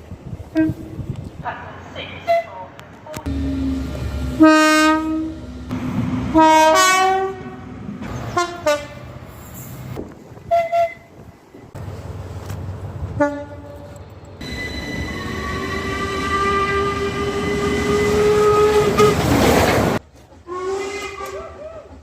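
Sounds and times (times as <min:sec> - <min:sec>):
low rumble of trains: 0:00.0 - 0:22.0
train horn blasts: 0:03.2 - 0:05.7, 0:06.3 - 0:07.7, 0:08.3 - 0:09.0, 0:13.2 - 0:19.3, 0:20.5 - 0:21.6.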